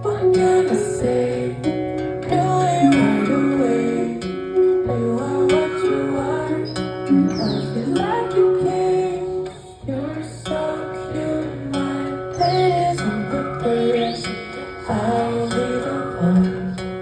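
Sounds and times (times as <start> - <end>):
woman singing: 0.0 - 1.7, 2.3 - 16.8
plucked guitar-like melody: 0.0 - 17.0.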